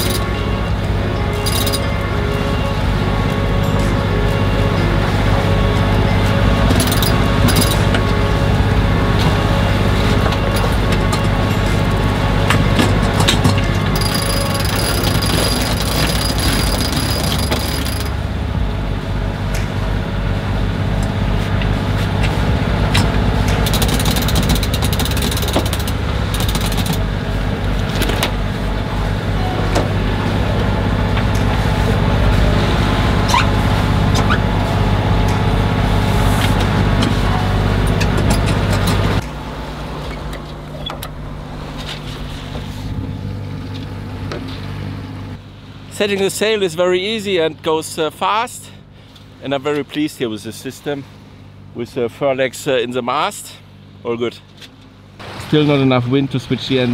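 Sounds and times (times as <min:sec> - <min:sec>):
boat engine droning: 0:00.0 - 0:56.9
clicks and rattles: 0:22.9 - 0:27.0.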